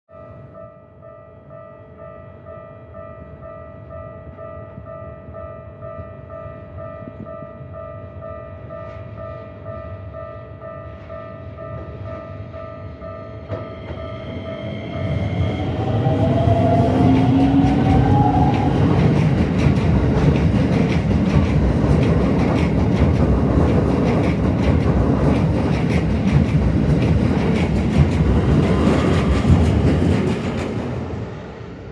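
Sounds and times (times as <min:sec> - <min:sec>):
wheels rumbling on rail: 0:13.5 - 0:31.9
clacking over rail joints: 0:17.0 - 0:31.1.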